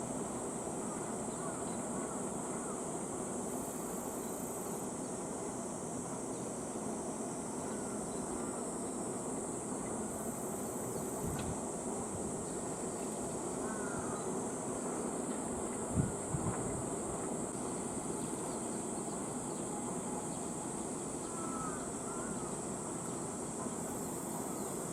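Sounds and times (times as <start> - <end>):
high-pitched insect chorus: 0.0 - 24.9
higher insect buzz: 3.4 - 24.9.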